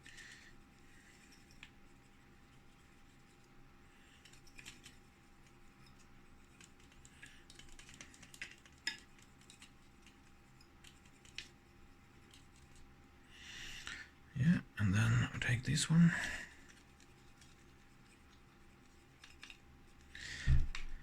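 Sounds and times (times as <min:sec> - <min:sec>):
faint steady hum: 0:00.0 - 0:21.0
small clicks and taps of handling: 0:04.2 - 0:12.9, 0:16.6 - 0:21.0.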